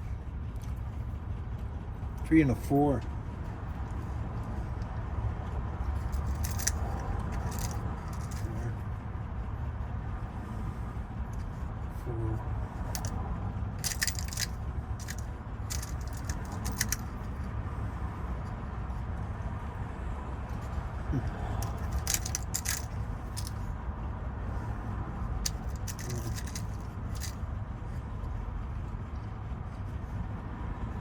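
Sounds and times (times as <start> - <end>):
steady low hum: 0.0 - 31.0
metal lock parts and keys clinking: 6.0 - 8.7, 12.8 - 13.2, 13.8 - 17.5, 21.4 - 23.7, 25.4 - 28.0.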